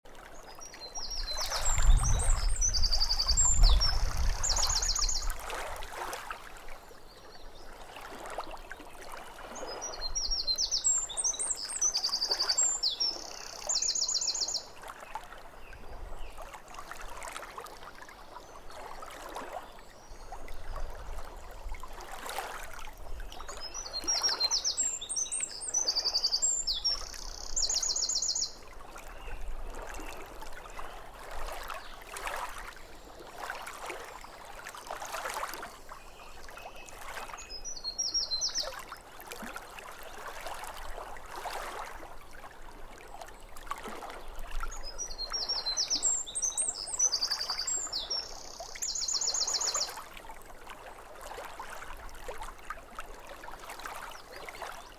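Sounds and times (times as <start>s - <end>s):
small waves lapping shore: 0.1s - 54.9s
songbird singing with trills: 0.7s - 5.3s, 9.9s - 14.7s, 23.5s - 28.6s, 36.0s - 38.8s, 44.7s - 50.0s.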